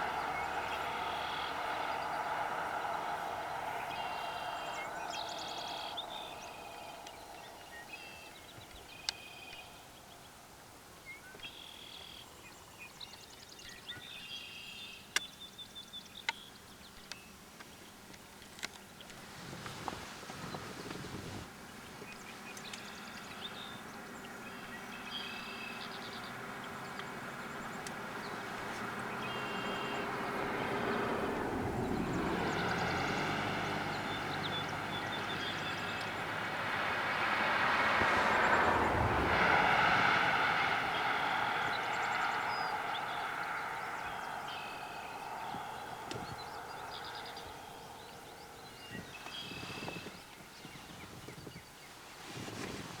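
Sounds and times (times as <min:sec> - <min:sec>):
vehicle passing by: 0:00.0 - 0:10.2, 0:19.5 - 0:50.2
bird chirps: 0:00.0 - 0:10.4, 0:22.0 - 0:52.0.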